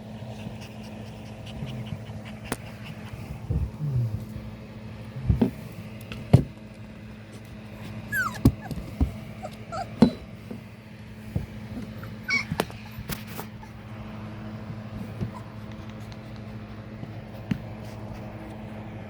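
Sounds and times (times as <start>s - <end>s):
puppies whimpering: 0.2s - 3.5s, 8.0s - 10.3s, 11.6s - 13.9s, 15.2s - 16.3s.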